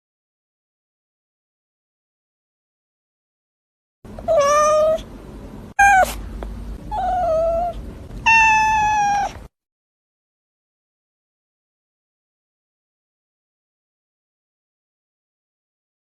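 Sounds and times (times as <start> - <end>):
cat meowing: 4.2 - 5.1, 5.8 - 6.2, 6.9 - 9.4.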